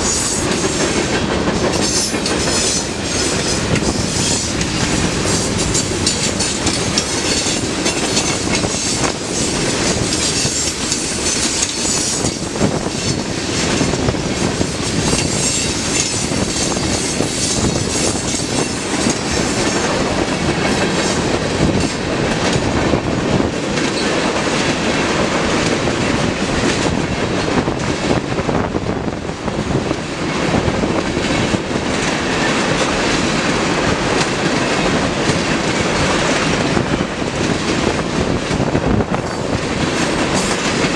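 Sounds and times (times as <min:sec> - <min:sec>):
wheels clicking over rail joints: 0:00.0 - 0:27.9, 0:31.0 - 0:40.9
train wheels clattering on rails: 0:00.0 - 0:40.9.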